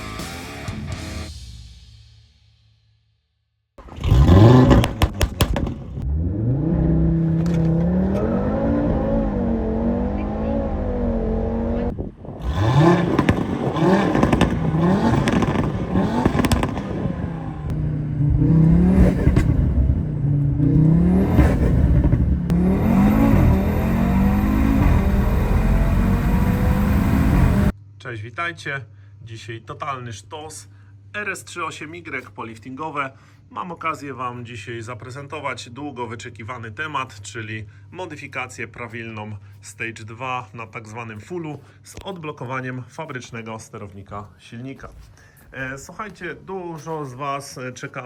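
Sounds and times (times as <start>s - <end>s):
engine starting with pops and crackles: 3.8s - 6.0s, 12.8s - 17.1s
engine revving: 3.8s - 27.8s.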